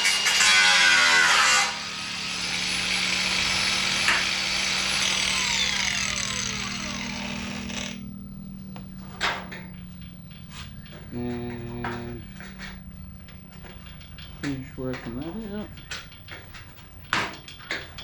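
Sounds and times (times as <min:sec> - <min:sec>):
power tool cutting sheet steel: 0:00.0 - 0:08.1
motor winding down whine: 0:01.6 - 0:15.8.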